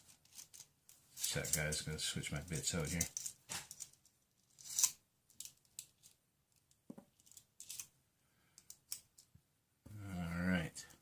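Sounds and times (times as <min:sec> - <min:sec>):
small metal clicks and scrapes: 0:00.0 - 0:01.8, 0:02.5 - 0:07.9, 0:08.6 - 0:09.3.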